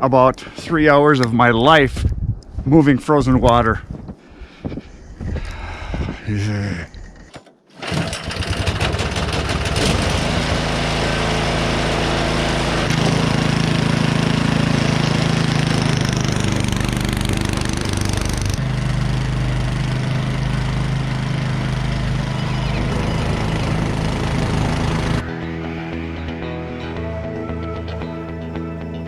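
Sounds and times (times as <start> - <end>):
snowblower engine running: 7.8 - 29.0.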